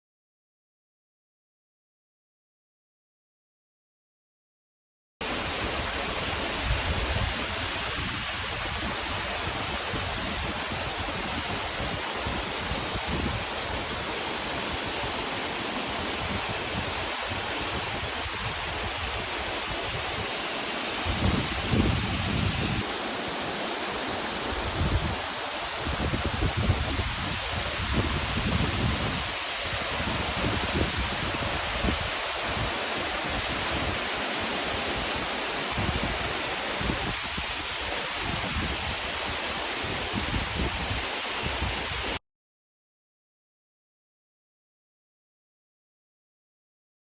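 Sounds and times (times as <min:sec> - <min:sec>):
waterfall rushing: 0:05.2 - 0:42.2
wind buffeting microphone: 0:21.0 - 0:23.0, 0:24.4 - 0:34.0.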